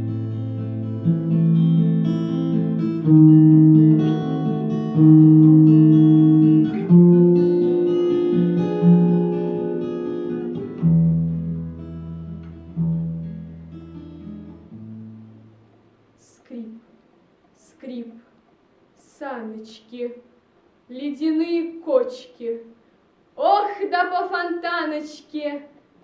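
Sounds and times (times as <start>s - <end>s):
acoustic guitar chords ringing: 0.0s - 16.2s.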